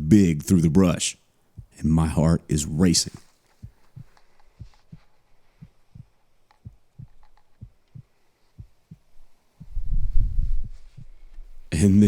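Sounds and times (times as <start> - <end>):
heartbeat double thumps: 1.5 - 1.8, 3.6 - 11.4.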